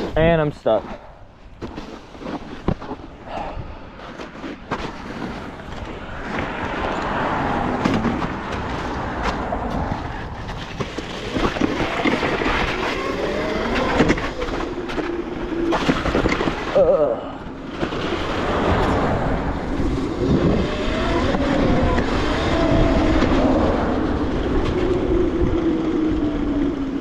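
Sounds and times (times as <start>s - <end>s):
tyre and wind noise: 0.0s - 27.0s
electric motor whine: 11.4s - 15.7s.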